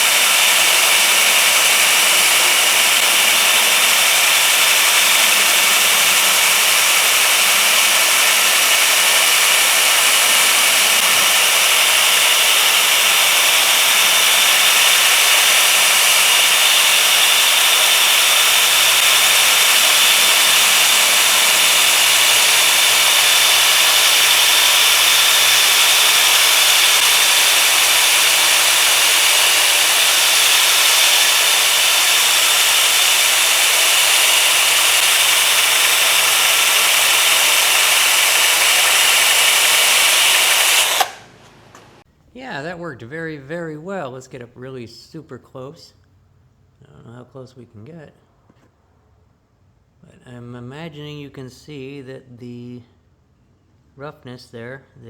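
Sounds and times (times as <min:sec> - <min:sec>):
sanding disc hissing on wood: 0:00.0 - 0:41.4
electric drill motor: 0:00.0 - 0:42.0.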